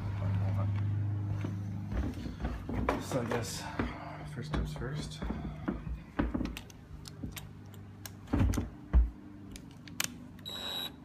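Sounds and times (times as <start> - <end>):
cordless drill whirring: 10.4 - 11.0.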